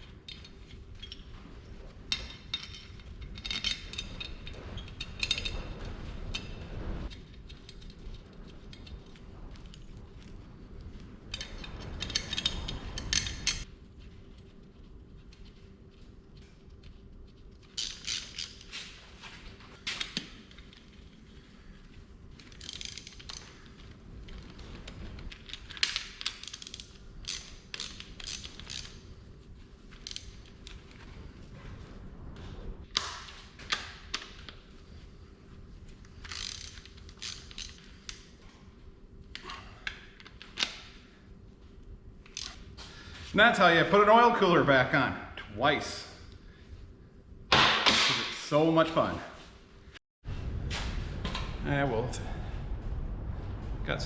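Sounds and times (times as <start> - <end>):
ratchet wrench clicking: 17.8 - 18.6, 22.4 - 23.6, 25.8 - 28.9, 36.2 - 37.8.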